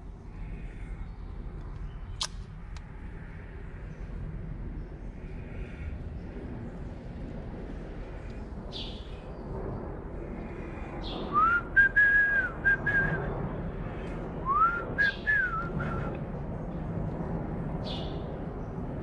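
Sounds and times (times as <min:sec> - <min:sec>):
man whistling a tune: 0:11.3 - 0:13.2, 0:14.5 - 0:16.1.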